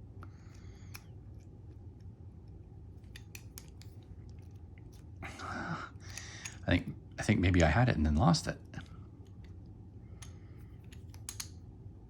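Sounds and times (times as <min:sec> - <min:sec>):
lock pick metallic clicks and scrapes: 0:03.0 - 0:04.0, 0:06.1 - 0:06.7, 0:10.2 - 0:11.6.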